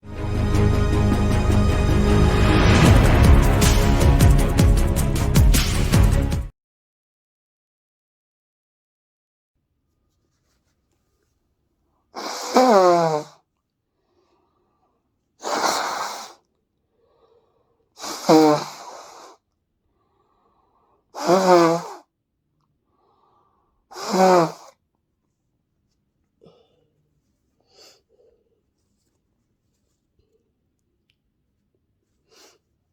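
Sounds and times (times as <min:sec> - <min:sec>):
person blowing nose: 0:12.2 - 0:13.4, 0:15.4 - 0:16.4, 0:18.0 - 0:19.4, 0:21.2 - 0:22.0, 0:23.9 - 0:24.8, 0:32.3 - 0:32.6.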